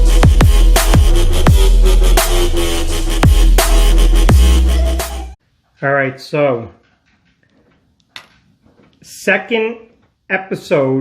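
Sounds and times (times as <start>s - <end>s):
dubstep electronic music: 0.0s - 5.4s.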